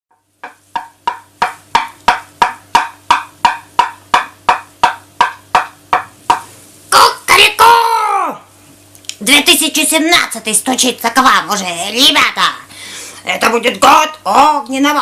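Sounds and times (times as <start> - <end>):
knocking on wood: 0.1 - 6.5.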